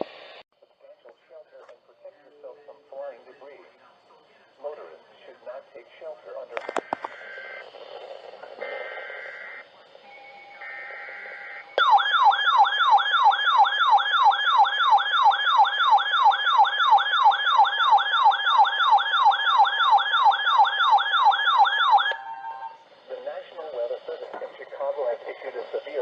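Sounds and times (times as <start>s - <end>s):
falling siren-style alert tone: 8.6s - 22.8s.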